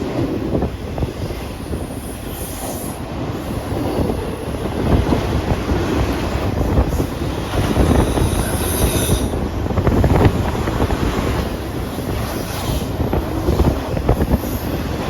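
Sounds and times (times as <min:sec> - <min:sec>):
train wheels clacking on rails: 0:00.0 - 0:15.0
faint high wheel squeal: 0:07.8 - 0:09.4.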